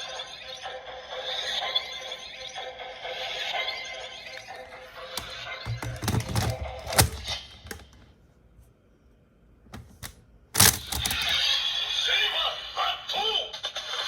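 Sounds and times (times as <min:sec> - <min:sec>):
hard plastic toy clicks: 0:05.2 - 0:08.0, 0:09.8 - 0:11.4.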